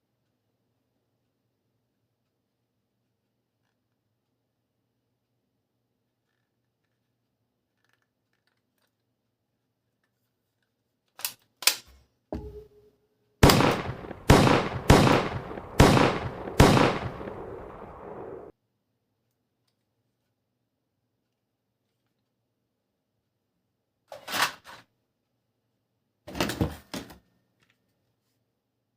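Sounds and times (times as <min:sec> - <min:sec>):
gunshot sound effects: 0:13.4 - 0:18.5.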